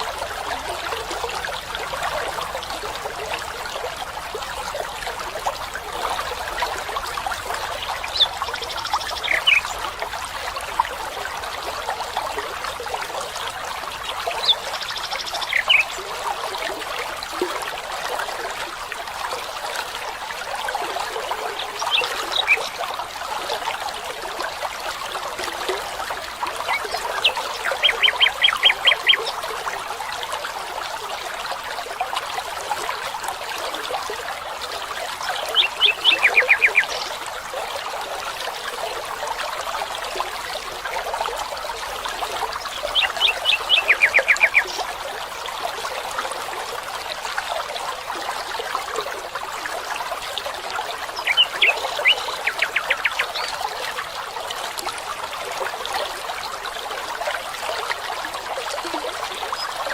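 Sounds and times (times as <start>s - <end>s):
stream trickling and splashing: 0.0s - 59.9s
birds calling: 7.7s - 9.9s, 14.3s - 16.0s, 21.8s - 22.8s, 26.7s - 29.4s, 35.5s - 37.1s, 42.7s - 44.8s.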